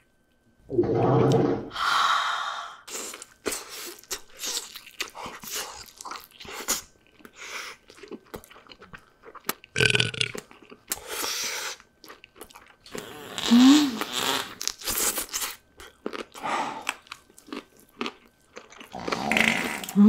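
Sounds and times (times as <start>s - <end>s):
chewing and crunching food: 2.9s - 20.0s
burp: 9.8s - 10.4s, 18.9s - 20.0s.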